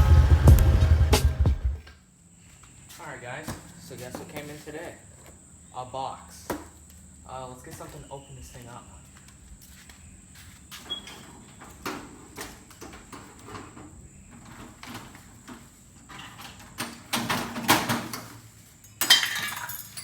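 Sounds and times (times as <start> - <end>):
tools clattering: 16.1 - 20.0.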